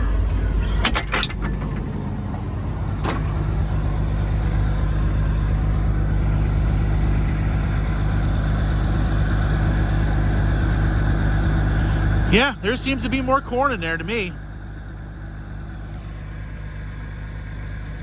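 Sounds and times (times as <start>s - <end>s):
combine harvester droning: 0.0s - 18.0s
cab door clicking: 0.1s - 2.3s.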